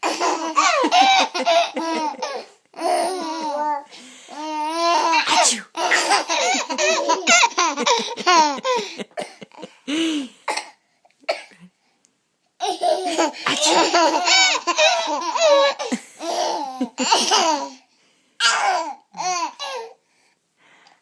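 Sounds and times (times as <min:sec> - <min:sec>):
young children laughing: 0:00.0 - 0:03.6, 0:05.0 - 0:10.0, 0:12.6 - 0:17.7
person sneezing: 0:05.2 - 0:06.3.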